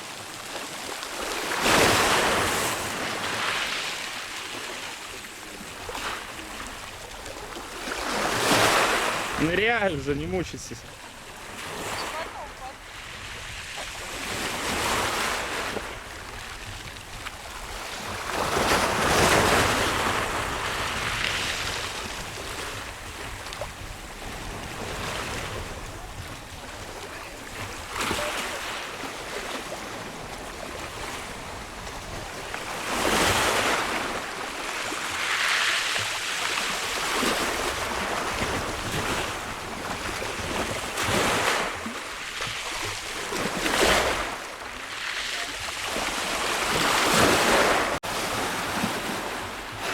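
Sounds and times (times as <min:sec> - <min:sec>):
waves crashing: 0:00.0 - 0:49.9
wind buffeting microphone: 0:11.4 - 0:28.2.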